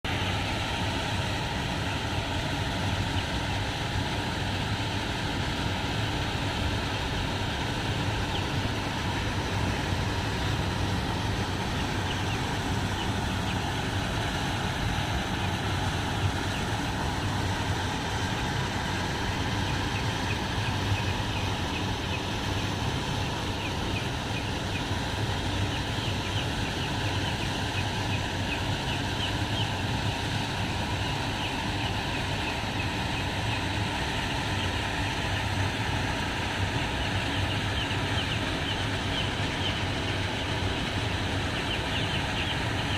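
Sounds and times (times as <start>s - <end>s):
steady low hum: 0.0s - 42.9s
chicks peeping: 12.0s - 13.8s, 25.5s - 35.5s, 36.7s - 40.5s, 41.5s - 42.9s.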